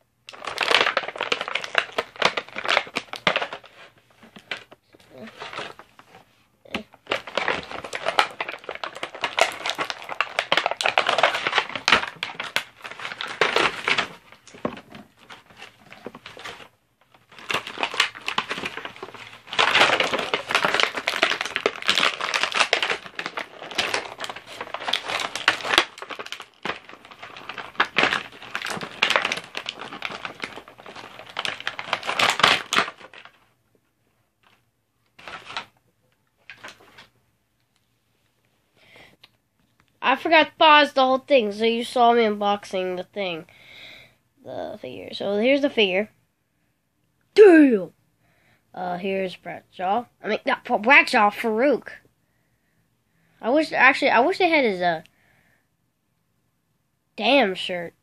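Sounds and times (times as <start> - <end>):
plastic packaging crinkling: 0.3 - 37.2.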